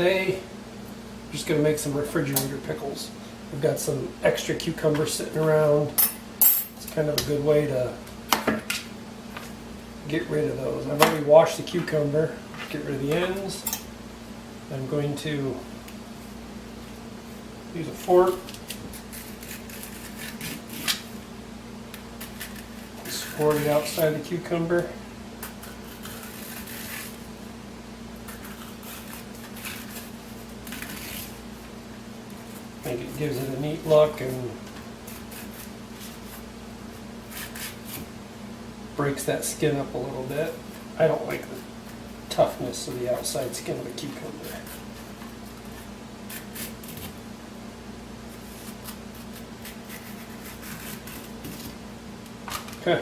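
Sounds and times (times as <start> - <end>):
fork scratching cucumber skin: 18.3 - 21.0, 22.2 - 24.2, 25.4 - 27.3, 28.2 - 31.4, 35.0 - 38.1, 41.4 - 47.2, 48.3 - 51.8.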